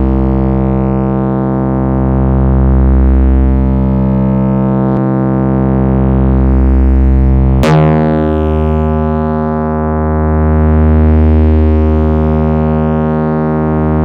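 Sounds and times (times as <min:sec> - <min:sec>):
synthesizer bass drone: 0:00.0 - 0:14.0
synthesizer bass note: 0:07.5 - 0:14.0.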